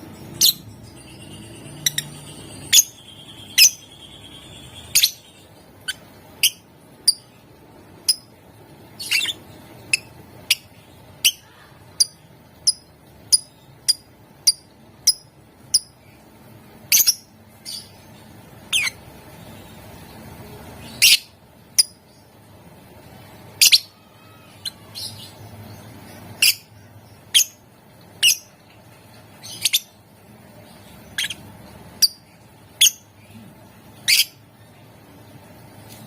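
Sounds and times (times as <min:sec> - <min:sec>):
lovebird high-pitched calls: 0:00.1 - 0:07.4, 0:08.0 - 0:08.3, 0:09.0 - 0:16.1, 0:16.9 - 0:18.0, 0:18.6 - 0:19.1, 0:20.8 - 0:22.2, 0:23.6 - 0:27.6, 0:28.2 - 0:28.6, 0:29.4 - 0:30.0, 0:31.0 - 0:33.1, 0:34.0 - 0:34.4.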